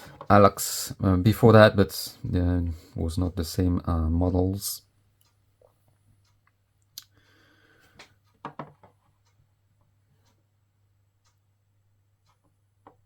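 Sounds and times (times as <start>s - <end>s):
faint clicks and taps: 7.8s - 10.4s, 12.2s - 13.0s.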